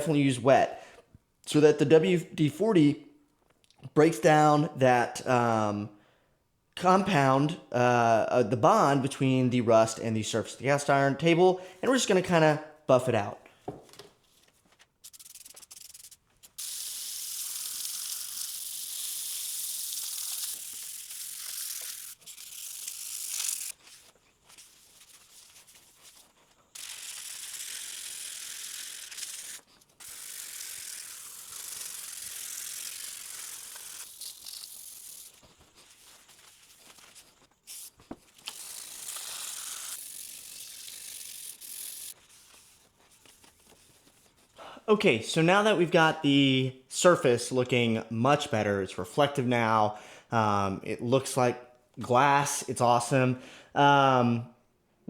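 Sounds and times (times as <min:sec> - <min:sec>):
sandpaper rubbing on metal: 0:15.0 - 0:42.7.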